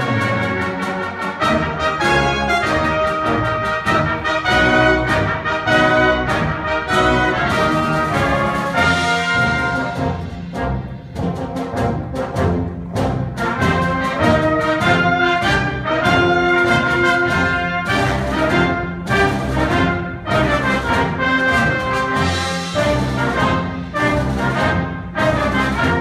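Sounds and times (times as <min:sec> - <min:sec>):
brass ensemble playing a march: 0:00.0 - 0:26.0.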